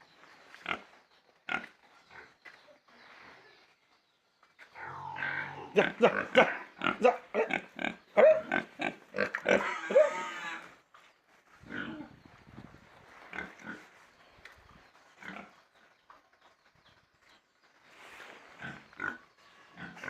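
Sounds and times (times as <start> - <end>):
pig squealing: 4.8 - 10.7
pigs grunting: 4.8 - 10.8, 11.6 - 12.2, 13.3 - 14.0, 15.2 - 15.8, 18.5 - 20.0.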